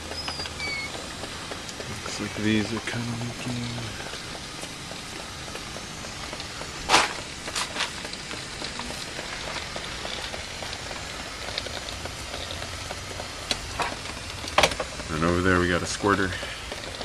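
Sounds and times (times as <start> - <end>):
water hissing and dripping: 0.0 - 17.0.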